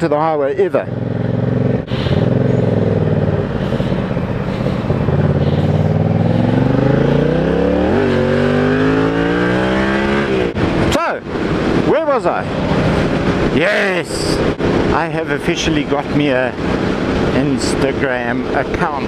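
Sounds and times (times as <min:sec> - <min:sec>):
motorcycle engine accelerating: 0:00.5 - 0:10.8.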